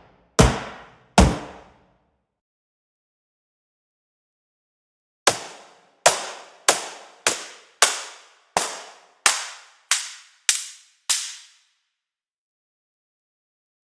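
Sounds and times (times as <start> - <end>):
cardboard box percussion hits: 0.4 - 1.7, 5.3 - 9.4.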